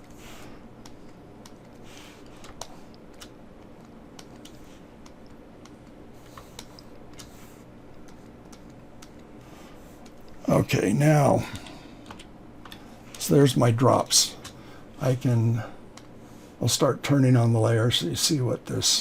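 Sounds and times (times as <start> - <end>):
steady low hum: 0.0 - 19.0
stylus on drawing tablet: 0.0 - 19.0
mouse and keyboard clicks: 0.8 - 9.3.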